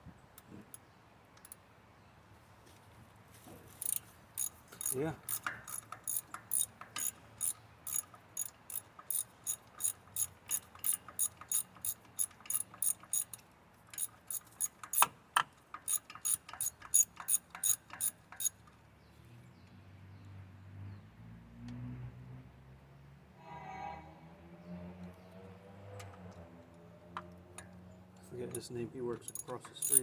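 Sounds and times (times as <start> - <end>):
socket ratchet clicking: 3.8 - 18.6, 29.3 - 30.0.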